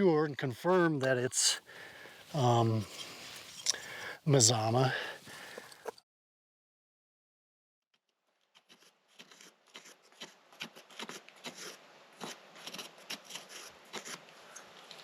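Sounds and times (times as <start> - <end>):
tool scraping gritty ash: 11.0 - 14.2.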